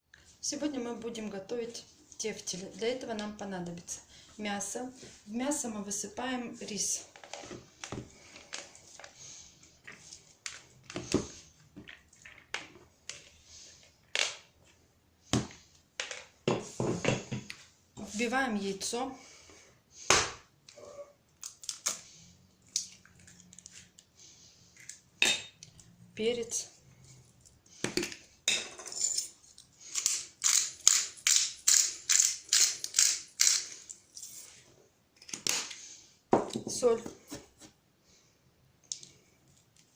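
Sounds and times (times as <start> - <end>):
pepper mill grinding: 29.9 - 34.5.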